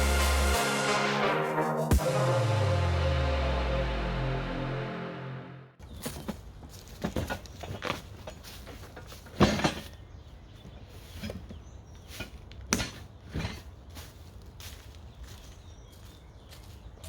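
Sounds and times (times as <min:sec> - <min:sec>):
music: 0:00.0 - 0:05.8.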